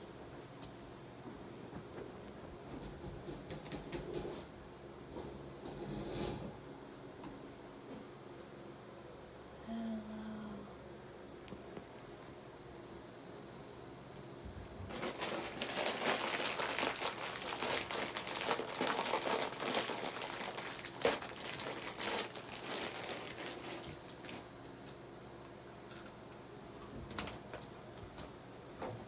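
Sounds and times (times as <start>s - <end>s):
crinkling crumpling noise: 14.9s - 25.0s.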